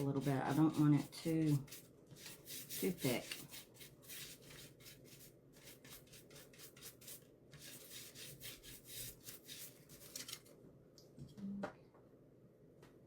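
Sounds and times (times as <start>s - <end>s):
paintbrush scrubbing on wood: 0.0s - 10.2s.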